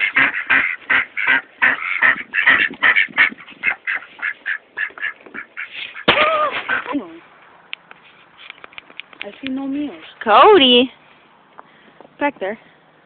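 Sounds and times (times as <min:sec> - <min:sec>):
duck quacking: 0:00.0 - 0:07.0.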